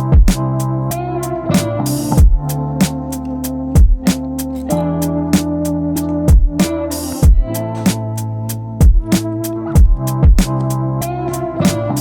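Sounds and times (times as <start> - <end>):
deep kick drums: 0.0 - 0.6, 2.2 - 2.5, 3.8 - 4.1, 6.3 - 6.6, 7.2 - 7.6, 8.8 - 9.2, 9.8 - 10.6
hi-hats: 0.0 - 12.0
sustained synth chords: 0.0 - 12.0.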